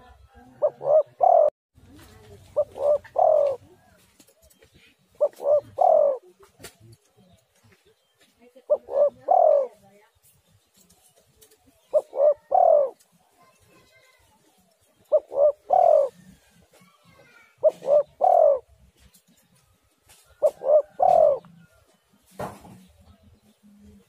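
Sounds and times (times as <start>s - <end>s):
dove cooing: 0.0s - 7.0s, 8.6s - 9.8s, 11.6s - 13.1s, 14.9s - 18.9s, 20.2s - 21.8s.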